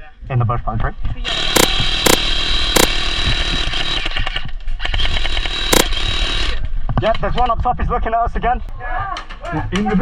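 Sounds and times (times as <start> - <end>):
sharp cracks: 1.3 - 6.2
airsoft minigun firing: 1.3 - 6.6.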